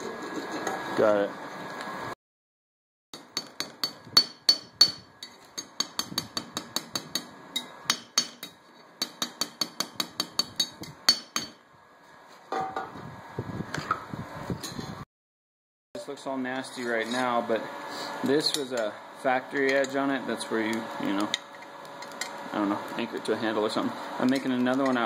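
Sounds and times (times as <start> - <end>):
hammer striking steel: 3.2 - 11.6.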